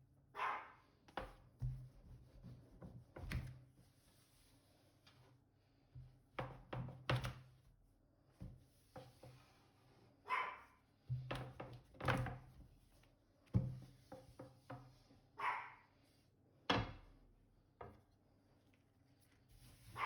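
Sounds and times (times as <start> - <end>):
knocks and thuds on kitchen counter: 11.1 - 12.4, 13.6 - 14.9.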